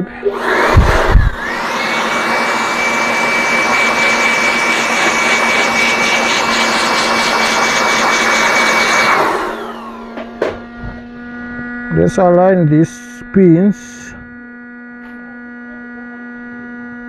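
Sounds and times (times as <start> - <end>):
air blower rushing: 0.0 - 12.2
blower motor whine: 0.0 - 17.0.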